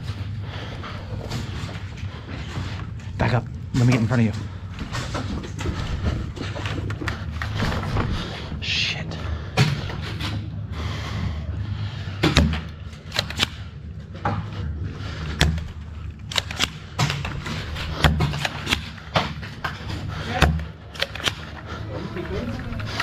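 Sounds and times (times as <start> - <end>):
low rumble: 0.0 - 23.0
sharp clacks and thuds: 1.1 - 8.5.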